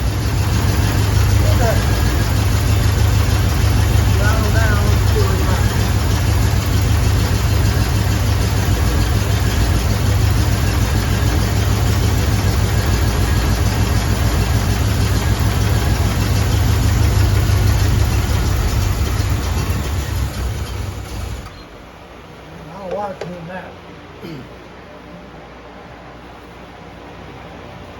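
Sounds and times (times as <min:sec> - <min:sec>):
car engine idling: 0:00.0 - 0:23.8.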